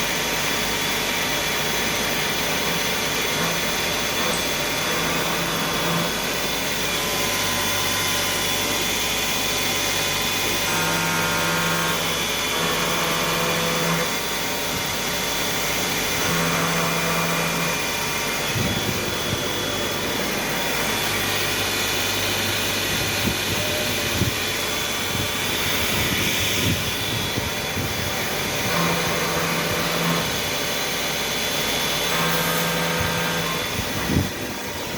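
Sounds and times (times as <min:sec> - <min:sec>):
machine whirring hum and hiss: 0:00.0 - 0:34.9
short whining tones: 0:03.3 - 0:30.6.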